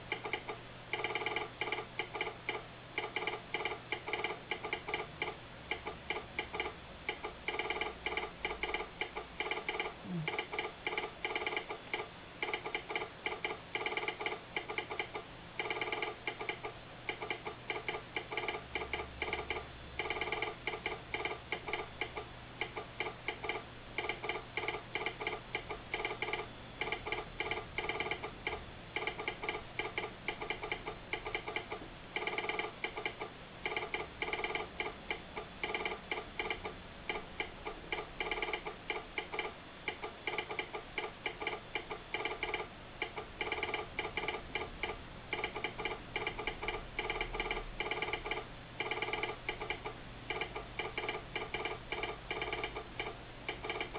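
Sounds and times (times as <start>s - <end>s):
telegraph sounder clicking: 0.0s - 53.9s.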